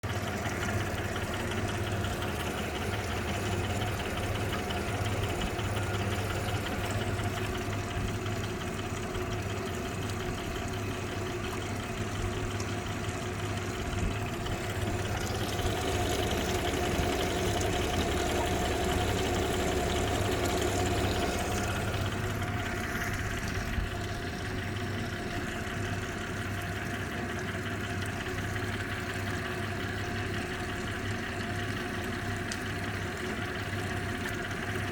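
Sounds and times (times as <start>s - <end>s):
engine knocking: 0.0s - 34.9s
outboard motor running: 0.0s - 34.9s.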